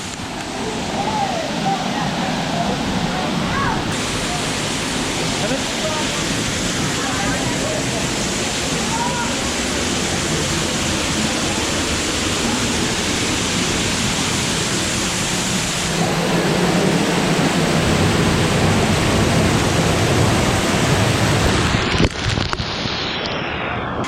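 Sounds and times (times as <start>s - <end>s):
waterfall roaring: 0.0s - 22.9s.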